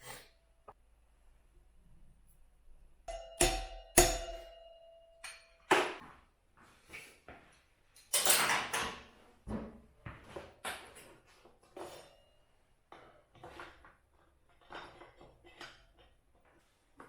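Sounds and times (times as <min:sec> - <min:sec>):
sharp metal strikes ringing: 0:03.1 - 0:05.6.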